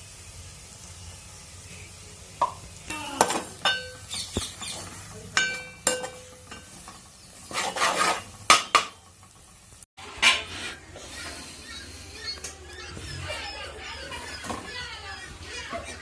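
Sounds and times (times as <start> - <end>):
metal spoon clinking in pot: 3.6 - 4.1, 5.4 - 6.8
spoon scraping pot: 3.6 - 8.9.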